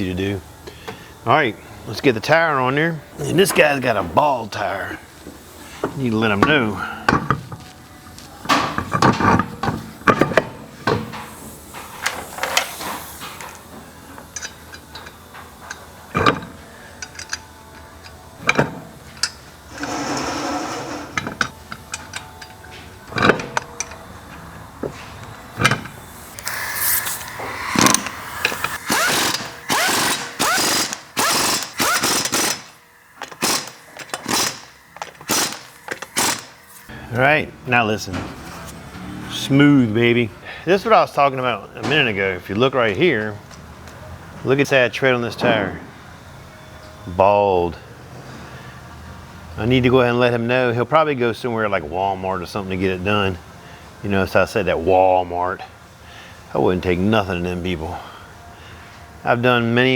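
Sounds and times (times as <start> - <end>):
metal clanks and knocks: 8.4 - 11.3, 18.4 - 24.0
impact wrench rattling: 25.6 - 36.6.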